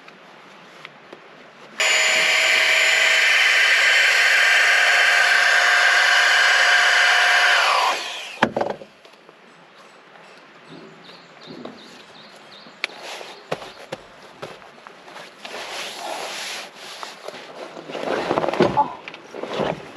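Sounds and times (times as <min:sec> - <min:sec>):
small electric motor whirring: 0:01.8 - 0:08.5.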